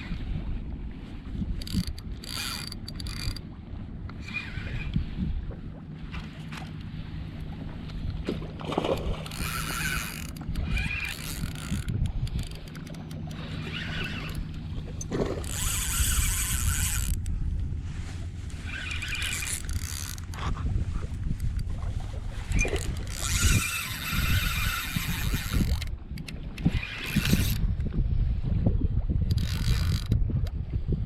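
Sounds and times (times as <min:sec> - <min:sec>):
wind rumbling on microphone: 0:00.0 - 0:31.0
fishing reel whirring: 0:01.4 - 0:03.5, 0:04.1 - 0:05.3, 0:08.7 - 0:17.6, 0:18.2 - 0:21.8, 0:22.4 - 0:27.9, 0:29.2 - 0:30.3.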